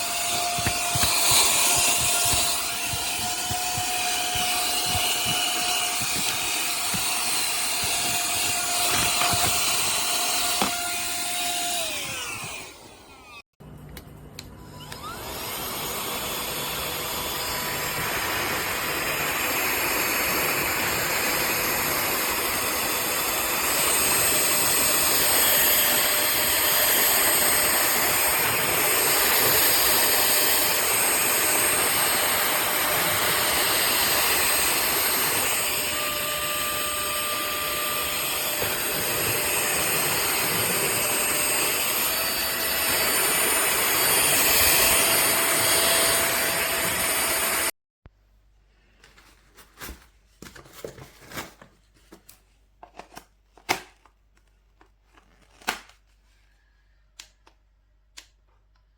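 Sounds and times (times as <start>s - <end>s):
handheld vacuum cleaner running: 0.0s - 13.4s, 14.7s - 47.8s
faint clicks and handling noise: 50.4s - 56.4s, 57.1s - 58.9s.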